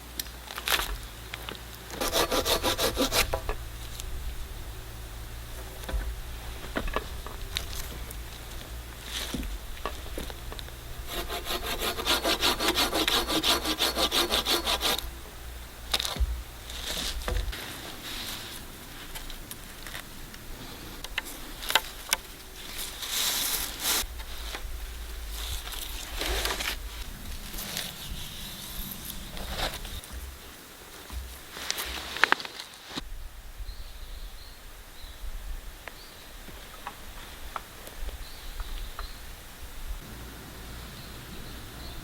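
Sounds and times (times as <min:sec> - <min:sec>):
hand saw cutting wood: 0:01.9 - 0:18.7
wood knocks and rustles: 0:05.3 - 0:11.4, 0:15.9 - 0:17.7.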